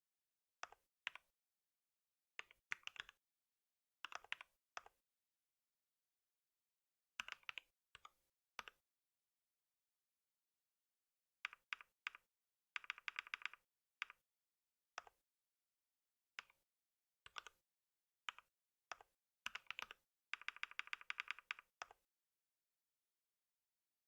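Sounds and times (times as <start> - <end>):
keyboard typing: 19.5 - 21.7.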